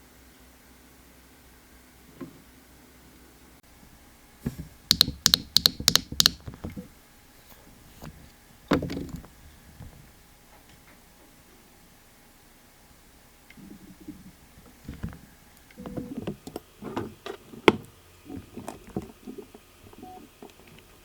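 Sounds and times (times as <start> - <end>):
dull knock: 4.4 - 6.8
sharp clicks and taps: 4.5 - 6.8.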